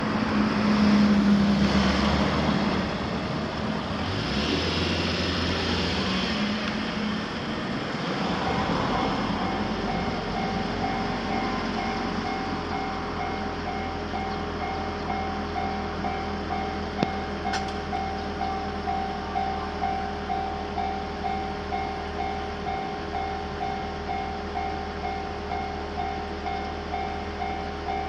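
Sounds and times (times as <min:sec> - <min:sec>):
passing vehicle: 0:00.0 - 0:28.0
level crossing warning bell: 0:07.9 - 0:28.0.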